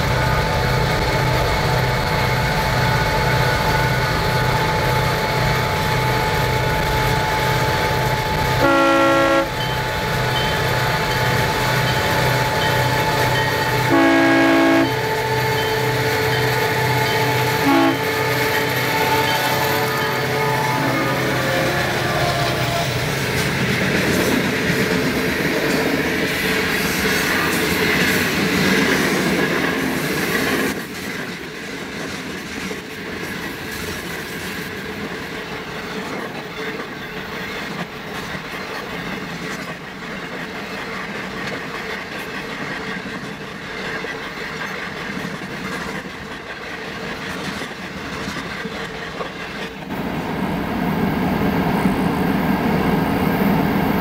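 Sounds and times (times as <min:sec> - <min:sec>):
train wheels clattering: 0:09.4 - 0:50.2.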